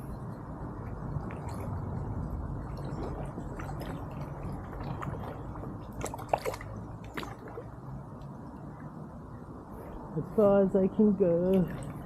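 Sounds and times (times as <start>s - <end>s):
paddle splashing water: 0.8s - 8.0s, 11.0s - 12.0s.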